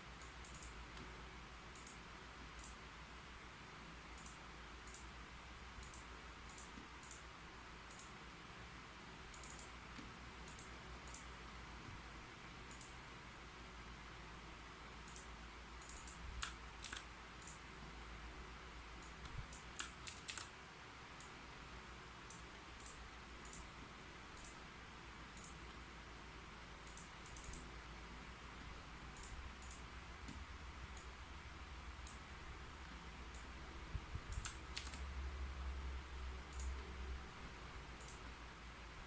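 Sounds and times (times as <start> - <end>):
faint low hum: 0.0 - 39.0
keyboard typing: 0.2 - 1.1, 5.8 - 7.3, 9.3 - 11.3, 15.1 - 17.6, 19.0 - 20.5, 26.8 - 27.7, 34.3 - 35.0.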